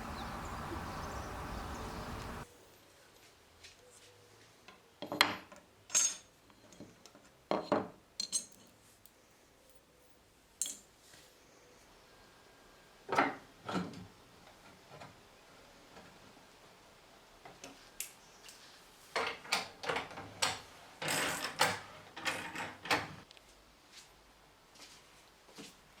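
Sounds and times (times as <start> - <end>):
small metal parts clinking: 8.2 - 8.8.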